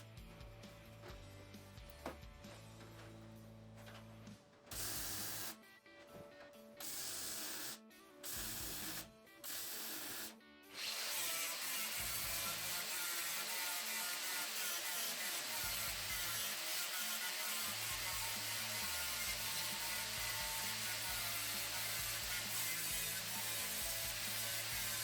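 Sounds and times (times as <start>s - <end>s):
background music: 0.0s - 25.0s
welder hissing: 4.7s - 5.6s, 6.8s - 25.0s.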